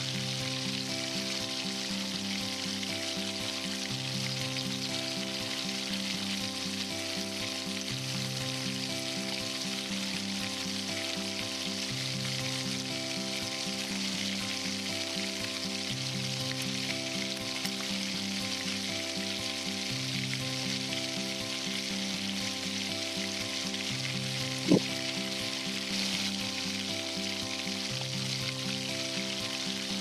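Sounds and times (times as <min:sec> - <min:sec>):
background music: 0:00.0 - 0:30.0
chicken sizzling in a pot: 0:00.0 - 0:30.0.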